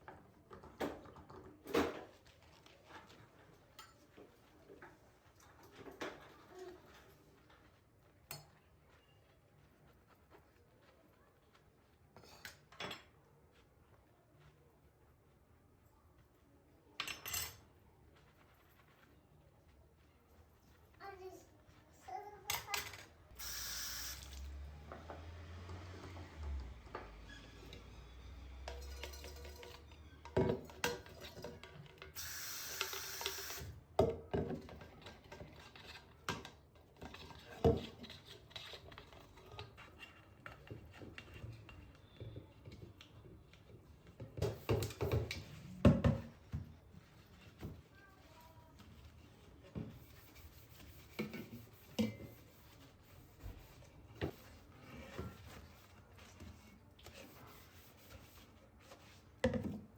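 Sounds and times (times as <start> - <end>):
dishes clinking and knocking: 28.6 - 32.0.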